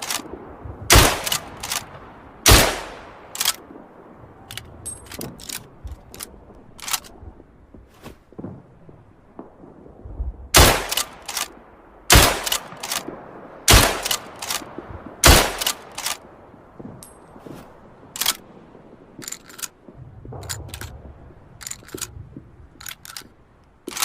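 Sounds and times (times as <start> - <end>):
rifle action clicks: 0.0 - 0.3, 0.9 - 1.9, 2.5 - 3.6, 4.5 - 7.2, 10.6 - 13.1, 13.7 - 16.2, 18.2 - 18.4, 19.2 - 19.8, 20.4 - 20.9, 21.6 - 22.1, 22.8 - 23.3
rifle shots: 0.9 - 3.6, 10.6 - 11.5, 12.1 - 16.2.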